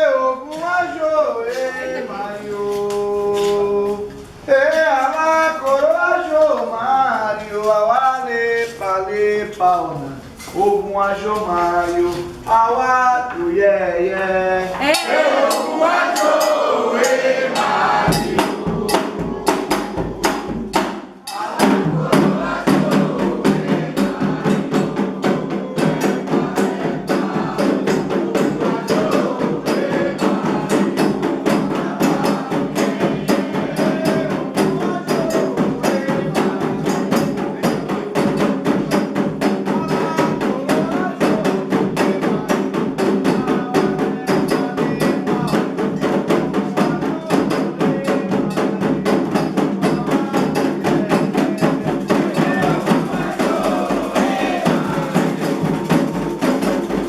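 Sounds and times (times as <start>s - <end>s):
group singing: 0.0s - 57.0s
hand drums: 13.3s - 57.0s.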